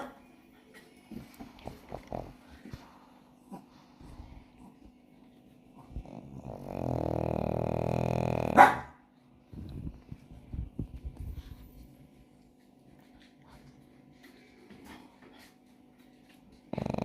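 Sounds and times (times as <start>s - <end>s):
dog snoring: 1.6s - 2.8s, 5.8s - 8.8s, 16.7s - 17.0s.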